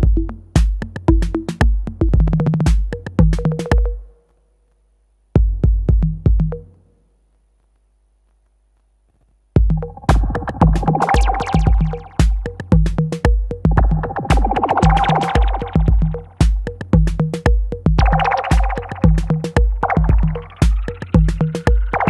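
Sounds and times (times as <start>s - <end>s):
deep kick drum: 0.0s - 4.0s, 5.4s - 6.6s, 9.6s - 22.0s
sharp hi-hat hits: 9.6s - 22.0s.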